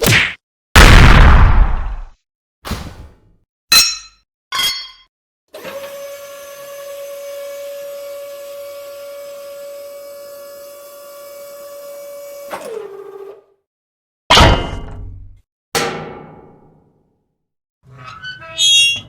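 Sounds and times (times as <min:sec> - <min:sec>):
motor whining machine: 0:05.6 - 0:13.1.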